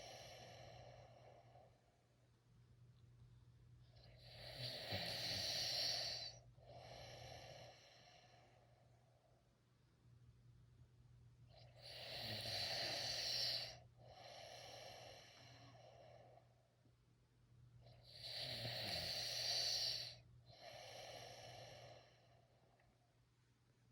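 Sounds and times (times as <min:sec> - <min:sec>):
person snoring: 0:04.2 - 0:07.9, 0:11.8 - 0:13.8, 0:18.2 - 0:22.1.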